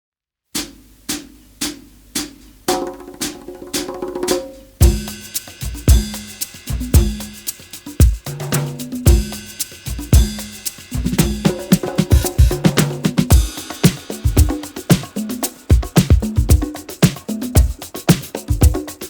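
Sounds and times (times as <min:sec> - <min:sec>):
drum beat music: 0:00.6 - 0:19.0
heavy kick drum and bass: 0:04.8 - 0:19.0.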